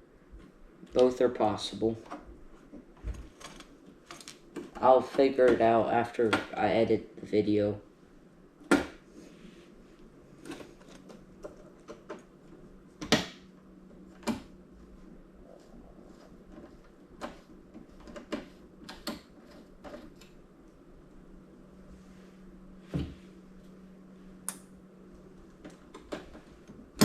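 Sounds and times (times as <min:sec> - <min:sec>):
faint steady hum: 0:00.0 - 0:27.0
clicks and knocks of tools and parts: 0:02.0 - 0:05.6, 0:10.4 - 0:13.3, 0:16.2 - 0:20.4, 0:25.4 - 0:27.0.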